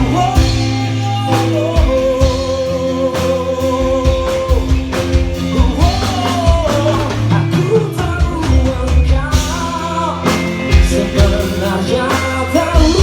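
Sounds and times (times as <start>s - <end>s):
live band playing: 0.0s - 13.0s
person singing: 0.0s - 13.0s.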